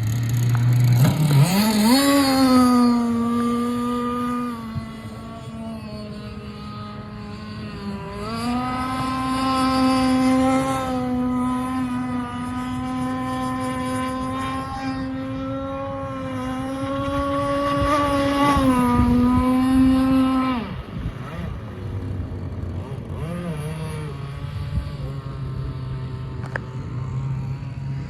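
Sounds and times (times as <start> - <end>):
two-stroke boat engine buzzing: 0.0 - 28.0.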